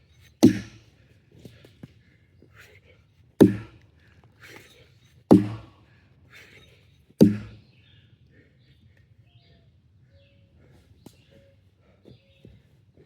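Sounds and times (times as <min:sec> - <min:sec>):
axe chopping wood: 0:00.4 - 0:00.9, 0:03.4 - 0:03.8, 0:05.3 - 0:05.7, 0:07.2 - 0:07.6.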